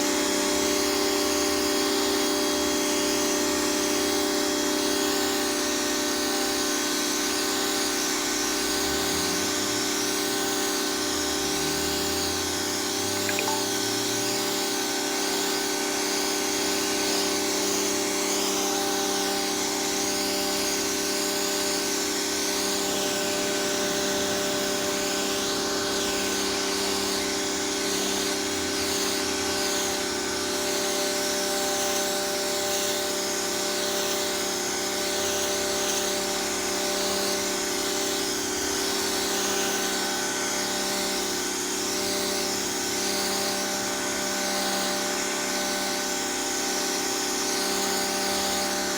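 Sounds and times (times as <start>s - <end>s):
high-pressure water jet hissing: 10.5s - 34.4s
pressure washer motor humming: 11.8s - 34.0s.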